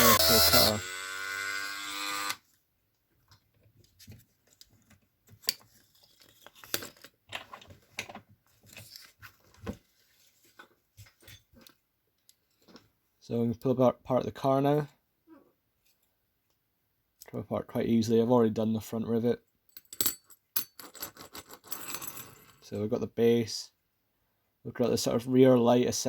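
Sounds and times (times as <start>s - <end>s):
rotary tool running: 0.0s - 2.4s.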